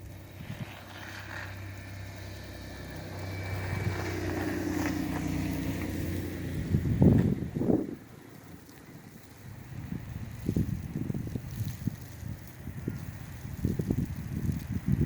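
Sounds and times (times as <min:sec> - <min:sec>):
vehicle engine passing by: 0:00.0 - 0:08.1
wind buffeting microphone: 0:00.0 - 0:15.0.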